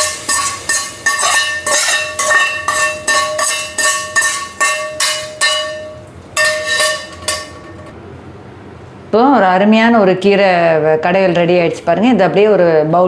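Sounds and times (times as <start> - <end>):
metal spoon clinking on steel pan: 0.0 - 7.9.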